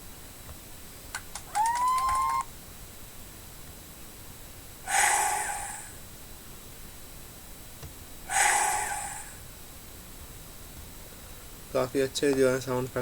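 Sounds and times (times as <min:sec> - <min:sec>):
buzzy tone burst: 0:04.9 - 0:06.1, 0:08.3 - 0:09.4.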